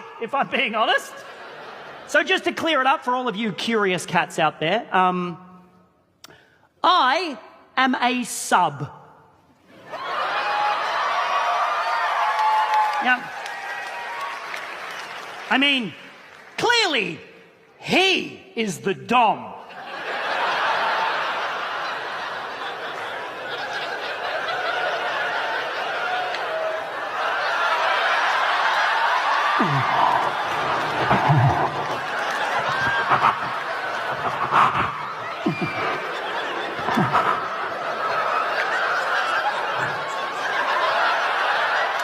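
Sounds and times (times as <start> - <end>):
audience laughing: 0.0 - 2.6, 19.6 - 42.0.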